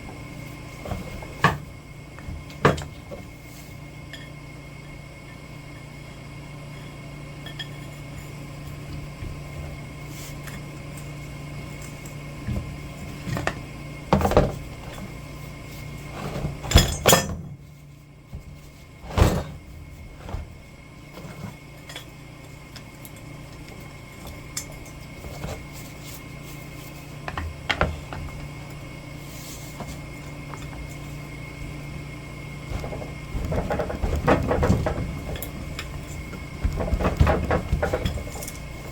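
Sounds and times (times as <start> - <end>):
steady hum: 0.0 - 38.9
metal tools clanking: 16.2 - 17.5, 32.7 - 38.9.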